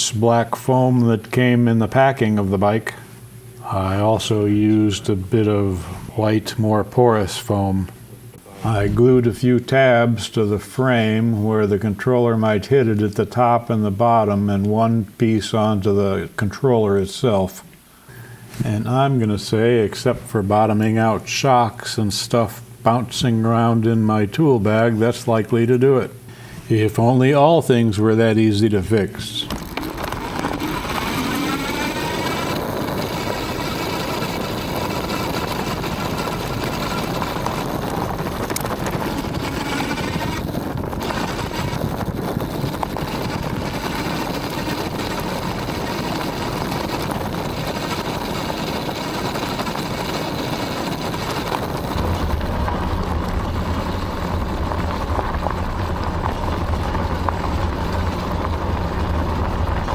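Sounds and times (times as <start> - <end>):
electric motor whine: 29.4 - 59.9
deep rumble: 29.5 - 59.9
tyre and road noise: 29.5 - 59.9.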